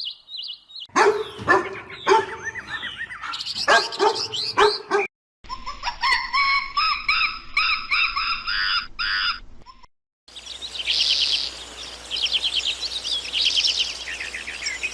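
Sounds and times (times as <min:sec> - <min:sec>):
bird chirps and trills: 0:00.0 - 0:05.0, 0:10.3 - 0:14.9
steady hiss: 0:10.3 - 0:14.9.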